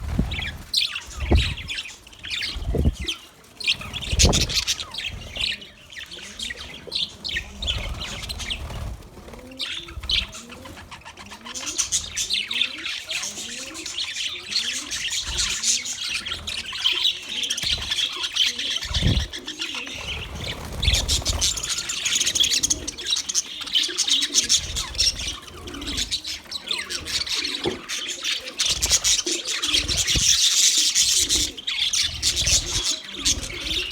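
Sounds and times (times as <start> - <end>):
budgerigars chattering and chirping: 0.0 - 33.9
low thumps: 1.2 - 1.8, 2.6 - 3.1.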